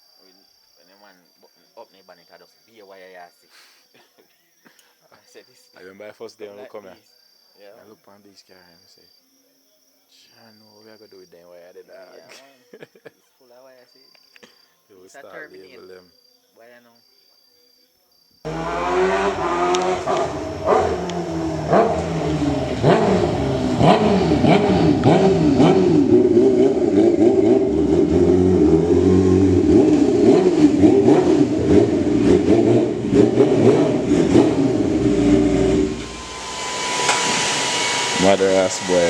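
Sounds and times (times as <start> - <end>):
car engines revving: 18.5 - 39.0
sharp engine pops: 37.0 - 37.4.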